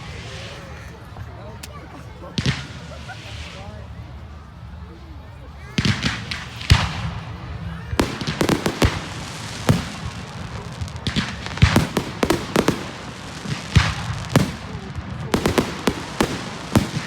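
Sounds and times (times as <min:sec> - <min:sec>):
fireworks bangs: 0:02.3 - 0:04.0, 0:05.7 - 0:17.0.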